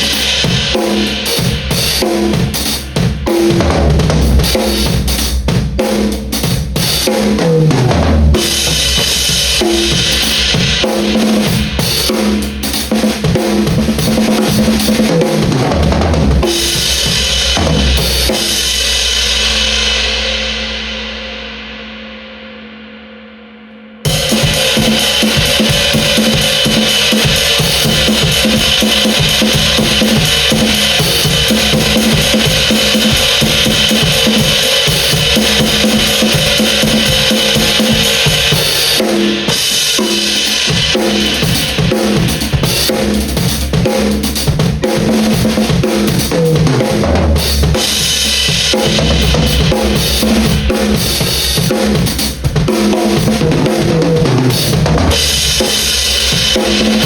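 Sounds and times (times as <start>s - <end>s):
drum kit beat: 0.0s - 21.2s, 24.0s - 57.0s
crash cymbal ringing: 4.2s - 7.0s, 8.4s - 13.3s, 16.4s - 43.6s, 47.7s - 52.9s, 55.2s - 57.0s.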